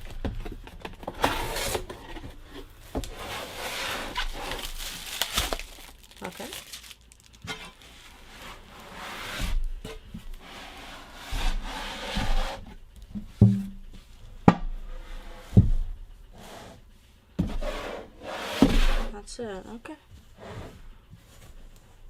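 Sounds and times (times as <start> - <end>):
cardboard being pulled and scraped: 3.0 - 5.6, 10.4 - 12.7, 17.4 - 19.1.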